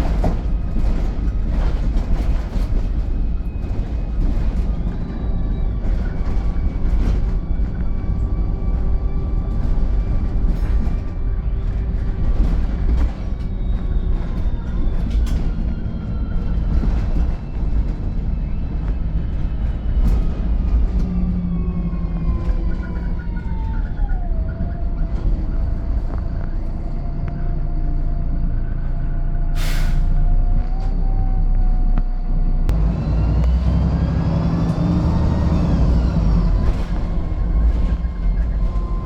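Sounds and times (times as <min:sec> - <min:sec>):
bus engine whine: 0:00.0 - 0:39.0.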